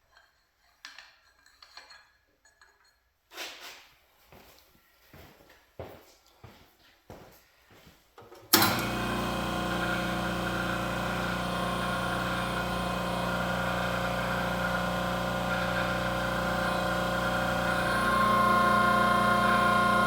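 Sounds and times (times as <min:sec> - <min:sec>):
pump motor humming: 0:08.5 - 0:20.0.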